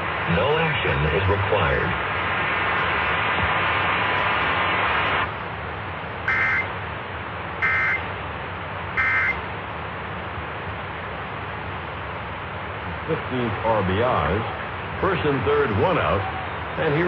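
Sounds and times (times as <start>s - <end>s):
radio hiss: 0.0s - 5.3s, 6.3s - 6.8s, 12.8s - 16.2s
two-tone digital data screech: 6.3s - 6.7s, 7.6s - 8.0s, 9.0s - 9.4s.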